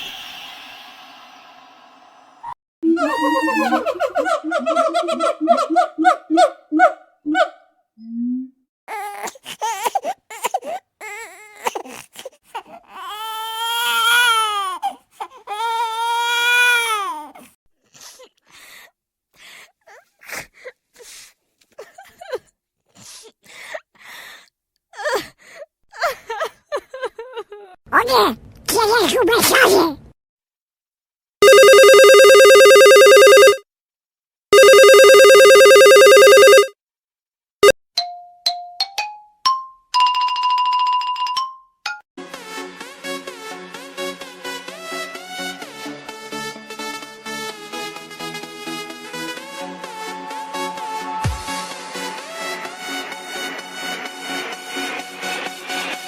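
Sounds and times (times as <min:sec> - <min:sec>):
baby crying: 0:02.9 - 0:04.2, 0:08.9 - 0:17.5
baby whimpers and breaths: 0:08.9 - 0:16.1, 0:19.7 - 0:22.2
old telephone bell ringing: 0:31.4 - 0:33.6, 0:34.6 - 0:36.7.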